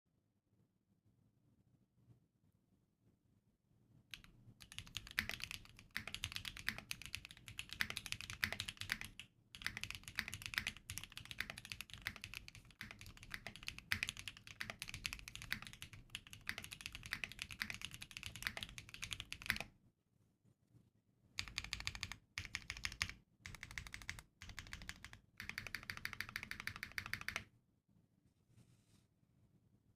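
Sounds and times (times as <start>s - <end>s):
mechanical keyboard typing: 4.1s - 19.7s, 21.4s - 27.5s.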